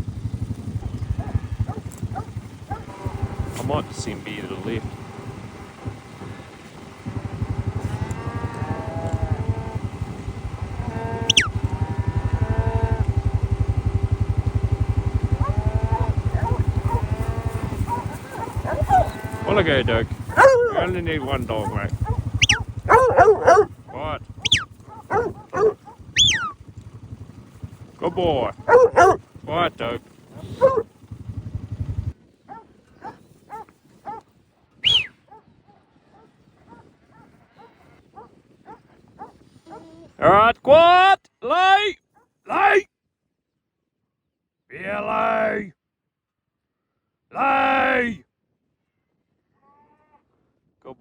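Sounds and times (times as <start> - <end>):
motorbike engine idling: 0.0 - 34.2, 34.8 - 35.1
cattle lowing: 0.3 - 12.5, 15.4 - 31.2, 32.5 - 34.2
dog barking: 1.1 - 3.1, 11.3 - 11.5, 15.4 - 19.3, 20.1 - 26.5, 28.5 - 29.2, 30.4 - 30.9, 32.5 - 34.2, 34.8 - 39.9
short falling whistle: 11.3 - 11.6, 34.8 - 35.1.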